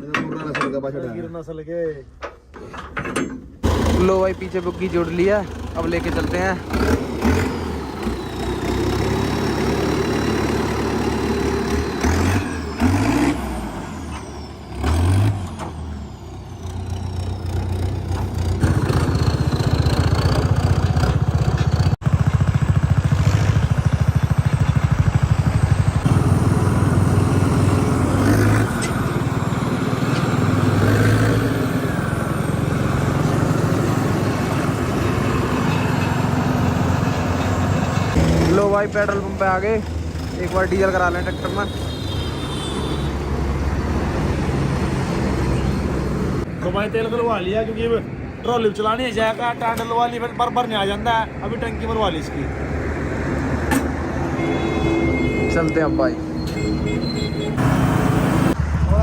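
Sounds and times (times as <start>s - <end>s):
tractor diesel engine revving: 3.6s - 41.8s, 57.1s - 59.0s.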